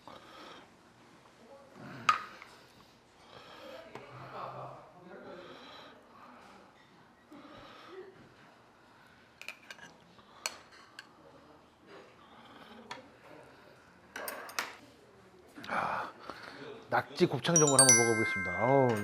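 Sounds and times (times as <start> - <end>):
cutlery clinking against dishes: 9.4 - 11.1, 14.2 - 14.8
cutlery clatter: 14.2 - 14.8.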